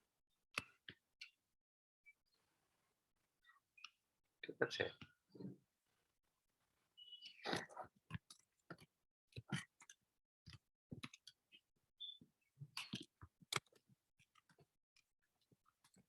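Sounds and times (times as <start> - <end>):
faint clicking and tapping: 7.2 - 16.0.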